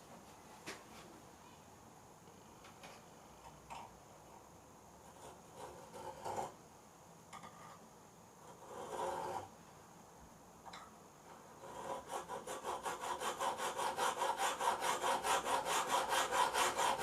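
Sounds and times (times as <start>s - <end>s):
hacksaw scraping: 8.5s - 9.5s, 11.6s - 17.0s.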